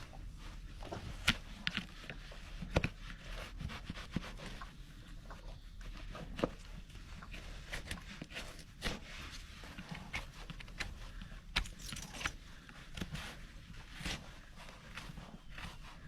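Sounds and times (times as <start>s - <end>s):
scraping on horse hoof: 0.2s - 16.0s.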